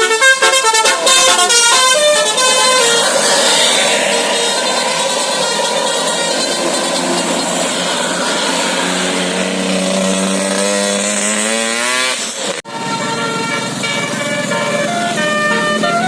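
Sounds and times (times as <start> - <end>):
musical air horn playing tune: 0.0 - 16.0
rising pitched tone: 0.8 - 12.8.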